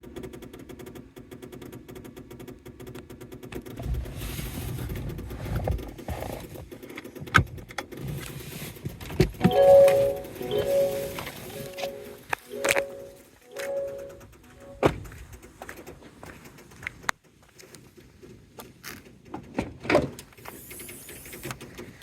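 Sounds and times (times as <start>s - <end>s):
held tones: 9.4s - 14.9s.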